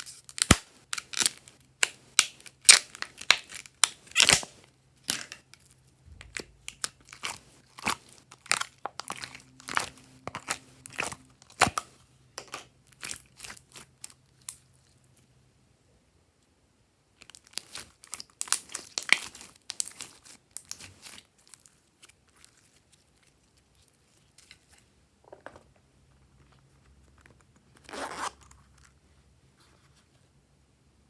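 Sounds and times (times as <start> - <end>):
slime squishing with clicks and pops: 17.3 - 20.9.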